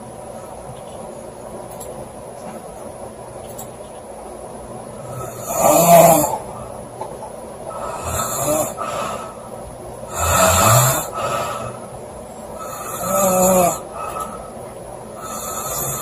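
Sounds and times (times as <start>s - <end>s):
woman snoring loudly: 5.0s - 6.5s, 7.7s - 9.4s, 10.1s - 11.8s, 12.6s - 14.4s, 15.2s - 16.0s.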